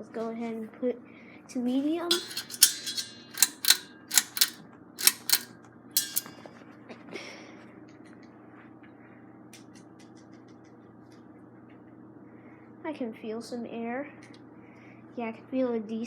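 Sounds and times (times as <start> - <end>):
ceiling fan motor humming: 1.7 - 6.5
chain rattling: 2.1 - 6.4
pull-chain switch clicks: 2.1 - 6.4.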